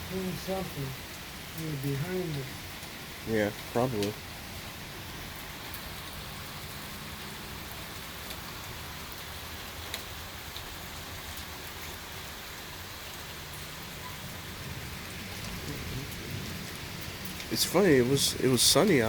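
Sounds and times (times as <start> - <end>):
steady rain splashing: 0.0 - 19.0
raindrop clicks: 1.5 - 4.2, 5.4 - 6.1, 7.6 - 12.0, 15.0 - 19.0.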